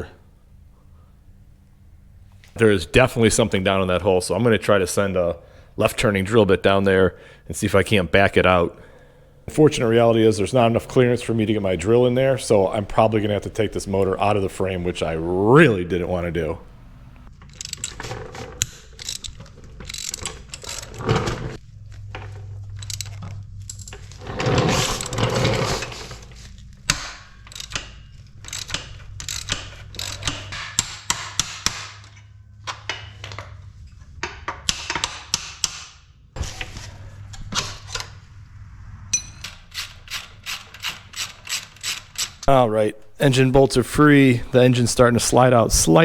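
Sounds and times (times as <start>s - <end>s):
ratchet wrench clicking: 18.6s - 20.9s, 26.9s - 32.2s, 39.2s - 42.5s
metal tools clinking: 39.1s - 42.5s.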